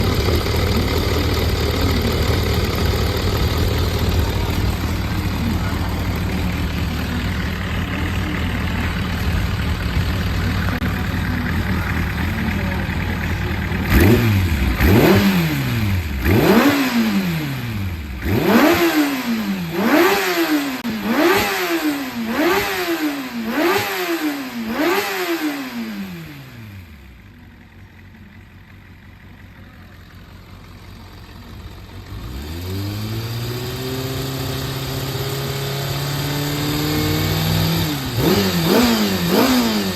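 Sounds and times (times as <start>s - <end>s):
motorcycle engine idling: 0.0s - 39.9s
motorcycle engine revving: 0.0s - 39.9s.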